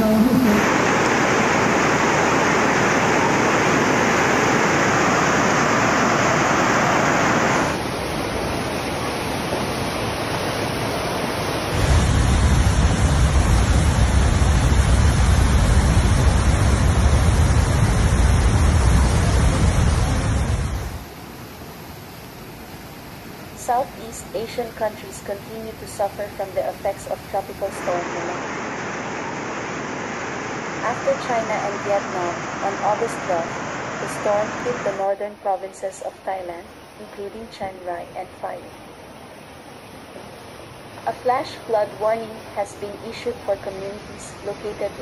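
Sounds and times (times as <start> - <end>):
floodwater rushing: 0.0 - 21.1, 26.6 - 35.2
heavy low rumble: 11.8 - 21.1.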